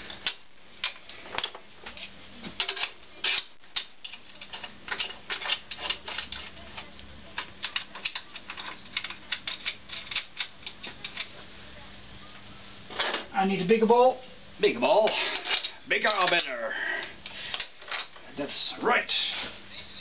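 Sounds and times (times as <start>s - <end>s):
faint steady hum: 0.0s - 20.0s.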